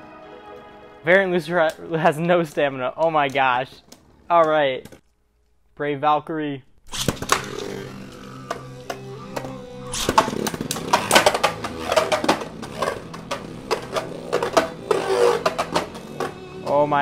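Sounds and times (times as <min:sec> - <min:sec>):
spinning tops clashing: 0:06.9 - 0:16.4
spinning tops whirring: 0:06.9 - 0:16.6.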